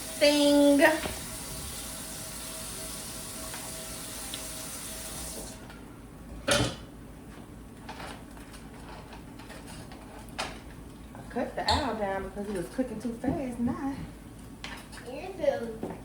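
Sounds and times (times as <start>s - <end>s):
steady kitchen hiss: 0.0s - 6.2s, 10.9s - 16.0s.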